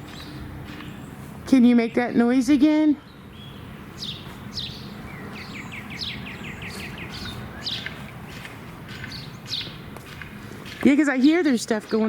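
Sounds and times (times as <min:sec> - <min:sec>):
small birds chirping: 0:00.0 - 0:12.0
bird trill: 0:03.0 - 0:09.9.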